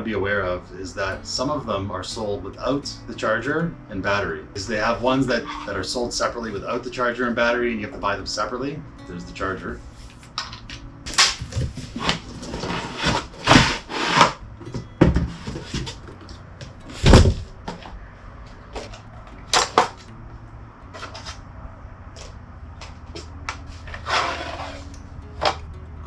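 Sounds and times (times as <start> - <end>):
heavy thump: 17.0 - 17.5.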